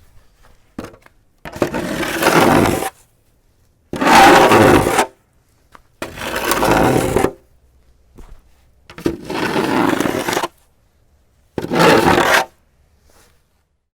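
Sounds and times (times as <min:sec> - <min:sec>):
snow shovel scraping pavement: 0:01.5 - 0:03.0, 0:04.0 - 0:05.2, 0:06.0 - 0:07.4, 0:08.9 - 0:10.6, 0:11.6 - 0:12.6.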